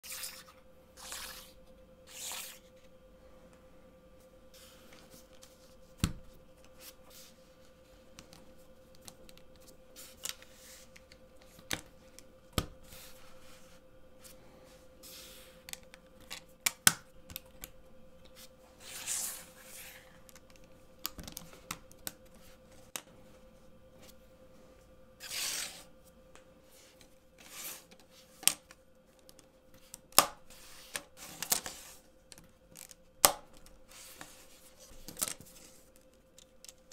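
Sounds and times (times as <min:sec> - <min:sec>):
faint steady hum: 0:00.0 - 0:36.9.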